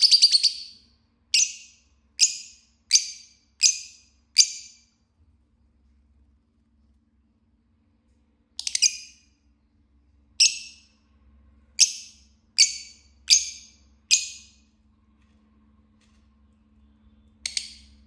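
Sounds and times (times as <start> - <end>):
lovebird chirping: 0.0 - 4.9, 8.6 - 9.3, 10.4 - 11.0, 11.8 - 14.6, 16.8 - 18.0.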